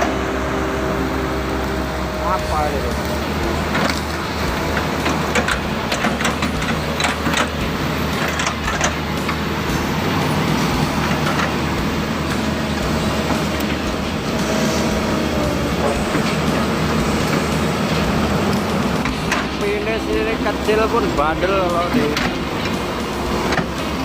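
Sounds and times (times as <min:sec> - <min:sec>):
excavator diesel engine under load: 0:00.0 - 0:24.0
branches cracking and knocking: 0:03.0 - 0:09.4.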